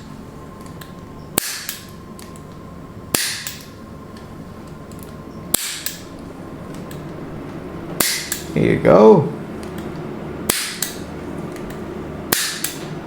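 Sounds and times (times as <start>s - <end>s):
spring-loaded instrument snapping: 0.7s - 2.3s, 3.1s - 3.7s, 5.0s - 6.1s, 8.0s - 8.5s, 10.5s - 11.0s, 11.6s - 12.9s.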